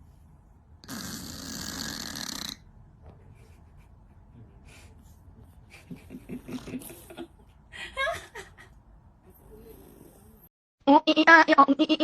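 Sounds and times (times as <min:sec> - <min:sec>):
rasping snore-like breath: 0:00.8 - 0:02.6, 0:09.4 - 0:10.5.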